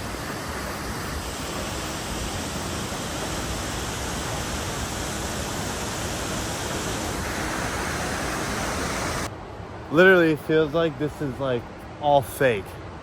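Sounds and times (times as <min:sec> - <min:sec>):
waterfall rushing: 0:00.0 - 0:09.3.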